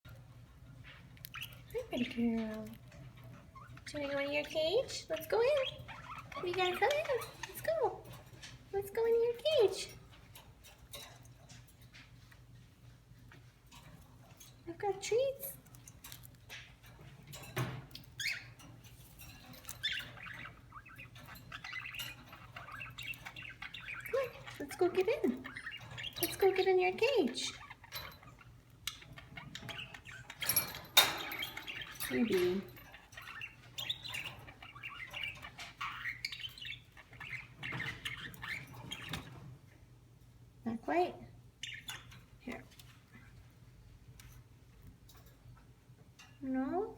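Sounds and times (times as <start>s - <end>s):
budgerigar chirping: 18.2s - 18.6s, 19.7s - 39.4s.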